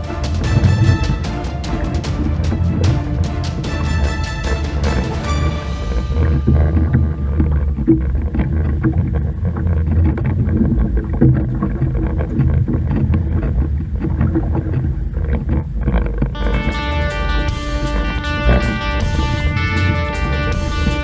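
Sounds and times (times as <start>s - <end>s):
music: 0.0s - 7.9s, 16.4s - 21.0s
motorboat rumble: 0.0s - 21.0s.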